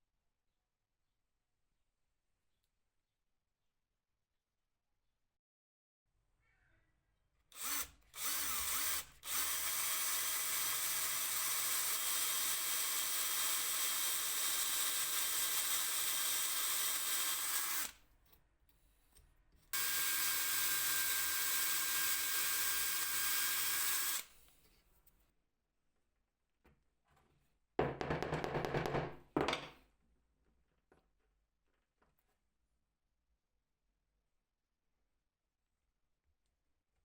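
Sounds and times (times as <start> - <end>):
power drill running: 7.5 - 18.0, 19.8 - 24.3.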